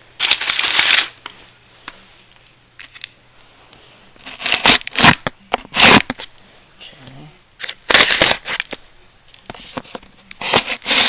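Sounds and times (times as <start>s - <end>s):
cardboard tearing: 0.2s - 1.1s, 4.2s - 6.1s, 7.9s - 8.6s, 10.4s - 11.0s.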